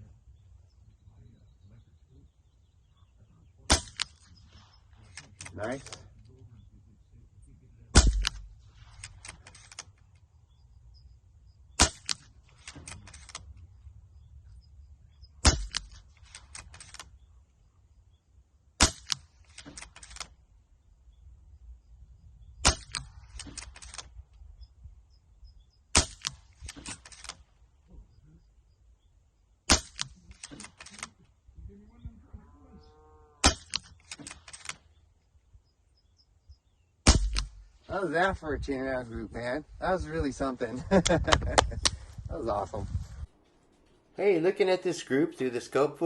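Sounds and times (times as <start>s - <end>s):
air rifle shots: 3.7s - 6.1s, 7.9s - 10.0s, 11.8s - 13.5s, 15.4s - 17.1s, 18.8s - 20.4s, 22.6s - 24.2s, 25.9s - 27.5s, 29.6s - 31.2s, 33.4s - 34.9s, 37.0s - 37.8s
small mechanical clicks: 8.2s - 10.3s, 11.8s - 13.6s, 15.5s - 17.2s, 18.9s - 20.4s, 22.6s - 24.2s, 26.0s - 27.5s, 29.8s - 31.2s, 33.4s - 34.9s.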